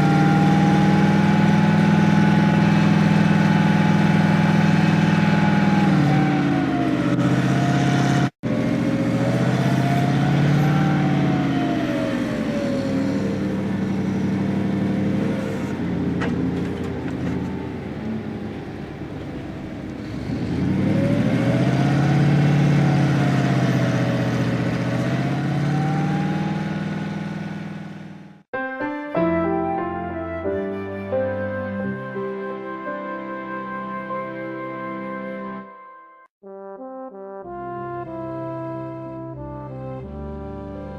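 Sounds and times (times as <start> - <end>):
vehicle engine revving: 0.0 - 28.5.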